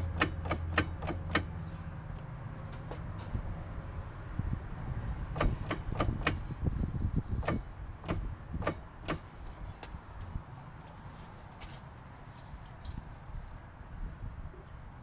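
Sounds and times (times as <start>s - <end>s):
rear axle knocking: 0.0s - 1.8s, 5.2s - 6.7s, 7.3s - 9.3s.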